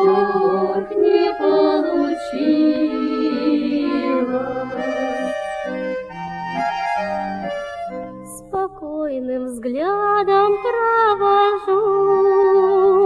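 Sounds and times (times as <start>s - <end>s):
woman singing: 0.0s - 5.4s, 8.3s - 13.0s
electronic keyboard chords: 0.0s - 8.5s.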